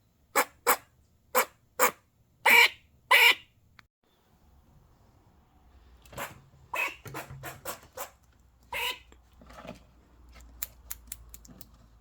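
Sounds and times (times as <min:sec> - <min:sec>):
squirrel alarm barks: 0:00.3 - 0:03.4.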